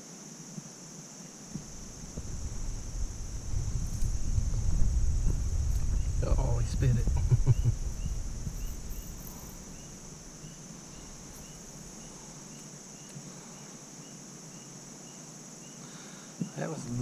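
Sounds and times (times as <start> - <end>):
insects chirping: 0.0 - 17.0
handling noise rumble: 1.5 - 12.6.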